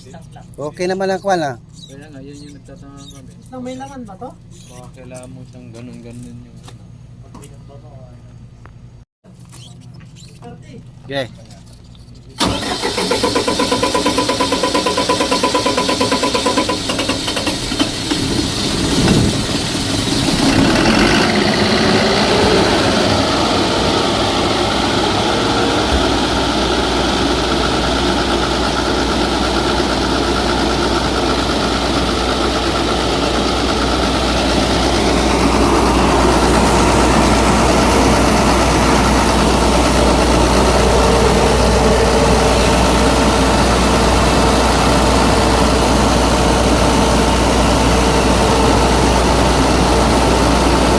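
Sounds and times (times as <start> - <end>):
generator engine running: 10.4 - 50.9.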